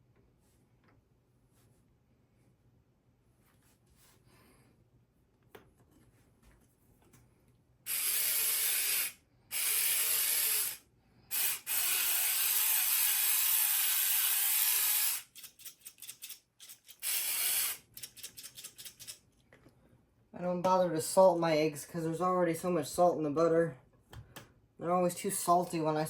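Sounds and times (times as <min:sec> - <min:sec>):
pepper mill grinding: 0:07.9 - 0:19.2.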